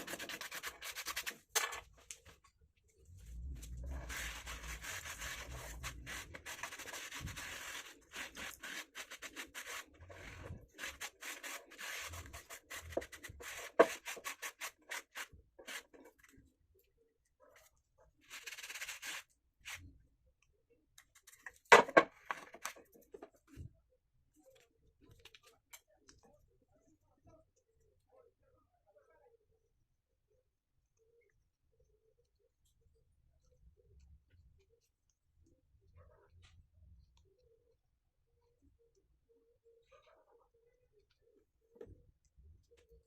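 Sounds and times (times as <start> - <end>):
rubbing and scraping: 0.0 - 1.8, 3.1 - 16.4, 18.3 - 19.8.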